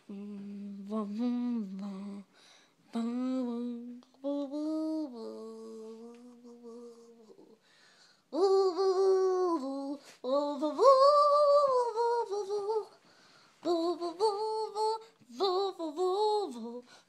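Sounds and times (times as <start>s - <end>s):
person humming a slow tune: 0.0s - 2.3s, 2.9s - 7.6s, 8.3s - 13.0s.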